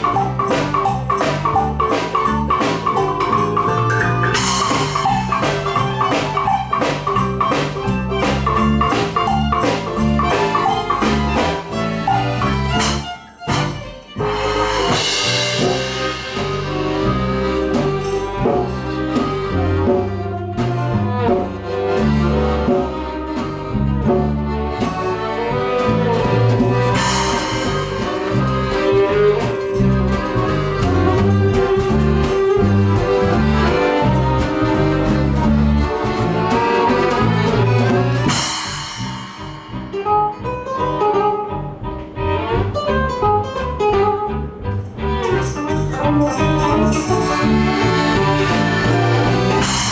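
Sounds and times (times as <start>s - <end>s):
live band playing: 0.0s - 49.9s
cymbal crashes: 12.7s - 18.4s, 38.2s - 40.5s.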